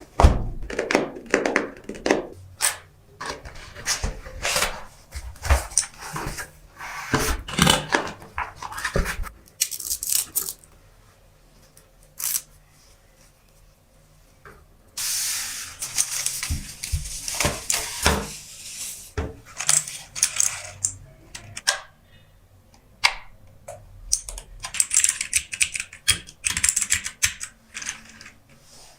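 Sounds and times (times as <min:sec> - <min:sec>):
rustling noise: 0:15.0 - 0:19.2.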